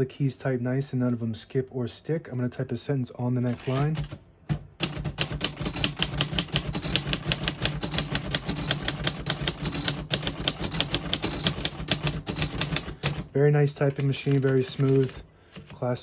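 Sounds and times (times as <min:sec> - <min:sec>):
manual typewriter typing: 0:03.4 - 0:16.0.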